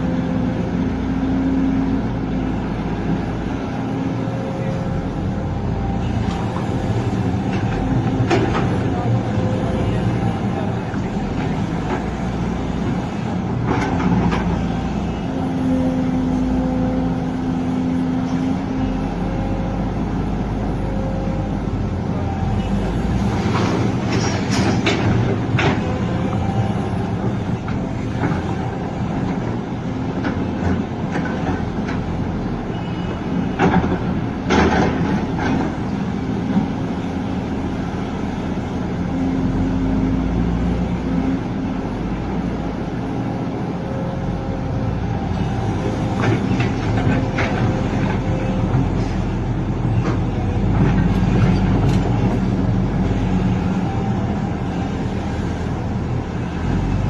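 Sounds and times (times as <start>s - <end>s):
excavator engine drone: 0.0s - 57.0s.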